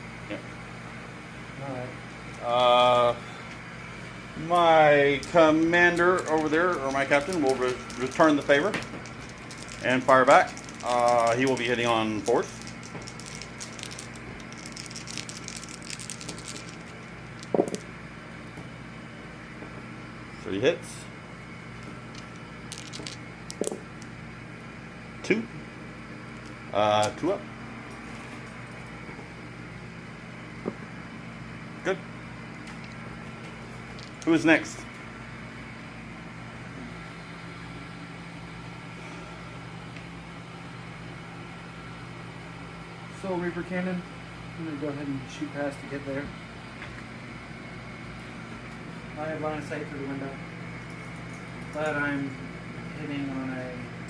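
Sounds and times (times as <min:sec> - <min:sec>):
steady low hum: 0:00.0 - 0:54.0
dice rattling on a tabletop: 0:05.2 - 0:17.9, 0:22.1 - 0:23.8, 0:34.0 - 0:34.4.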